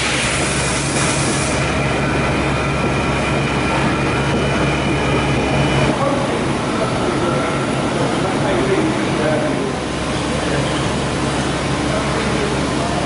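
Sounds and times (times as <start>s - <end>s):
lathe machine humming: 0.0s - 13.0s.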